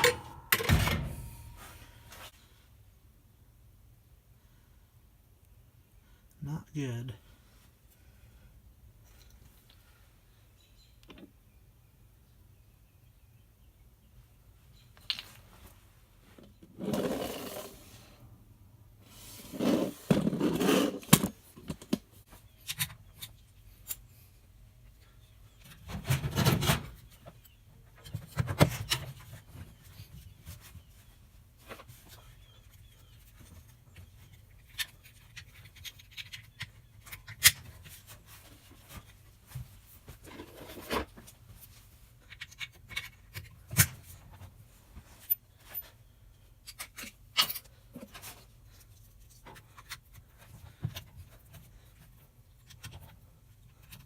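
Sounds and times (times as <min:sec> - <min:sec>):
rubbing and scraping: 0:16.6 - 0:18.1, 0:19.1 - 0:21.3.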